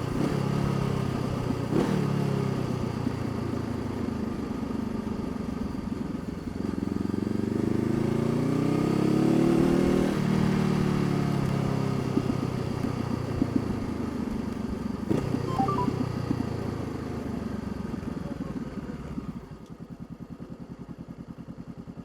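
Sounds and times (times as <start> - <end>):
motorcycle engine revving: 0.0 - 3.2.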